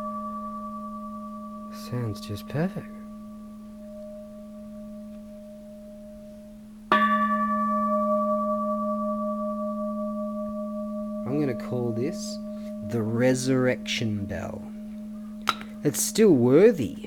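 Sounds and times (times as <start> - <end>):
temple bell ringing: 0.0 - 17.0.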